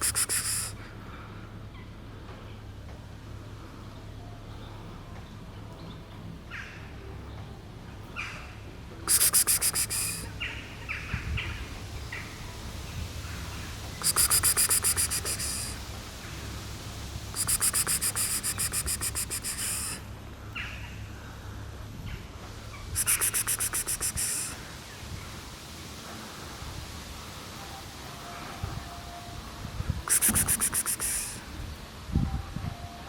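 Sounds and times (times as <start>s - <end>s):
insect trilling: 0.0s - 0.8s, 9.0s - 10.4s, 14.0s - 15.8s, 17.3s - 20.0s, 23.0s - 24.6s, 30.1s - 31.4s
faint short chirps: 17.4s - 20.0s, 22.9s - 24.6s, 30.1s - 31.4s.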